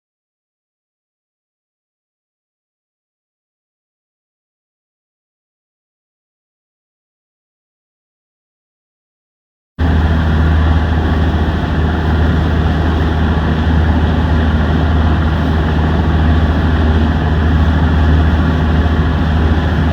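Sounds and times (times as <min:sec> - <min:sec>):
boat engine droning: 0:09.8 - 0:19.9.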